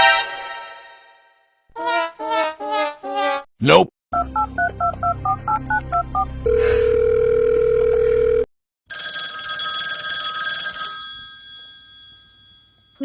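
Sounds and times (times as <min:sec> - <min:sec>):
loud steady telephone tone: 0:06.5 - 0:13.0
telephone bell ringing: 0:06.5 - 0:13.0.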